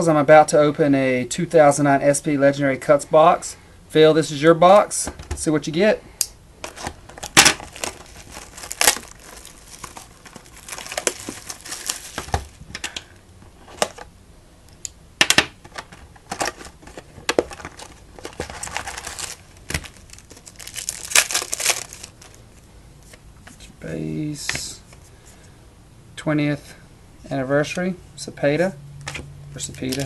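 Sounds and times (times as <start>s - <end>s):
card packaging crinkling and tearing: 6.6s - 12.8s, 13.6s - 14.1s, 15.7s - 22.6s, 29.1s - 30.0s.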